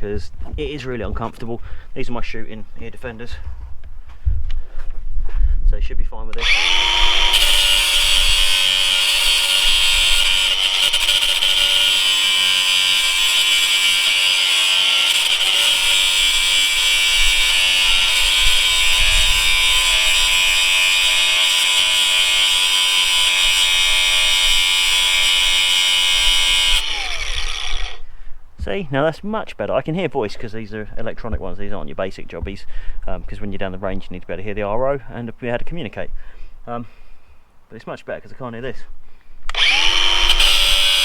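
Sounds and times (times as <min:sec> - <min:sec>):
angle grinder grinding metal chain: 0:06.4 - 0:28.0, 0:39.5 - 0:41.0.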